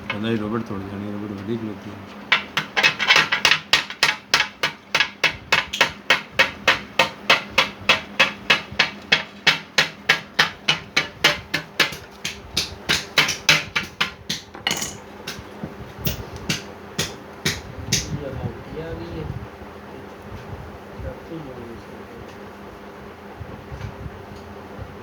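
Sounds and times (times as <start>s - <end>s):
hammer striking: 2.3s - 15.4s, 16.0s - 18.1s.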